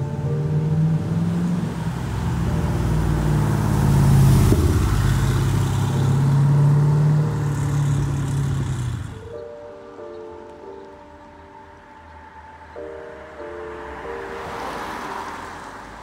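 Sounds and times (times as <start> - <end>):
car engine running: 0.4 - 9.3.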